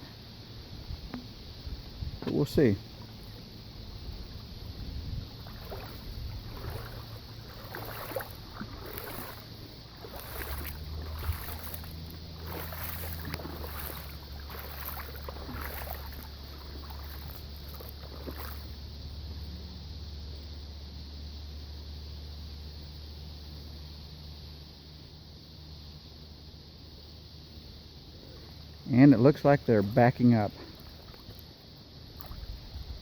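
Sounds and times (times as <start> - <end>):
truck engine low hum: 3.0 - 20.2.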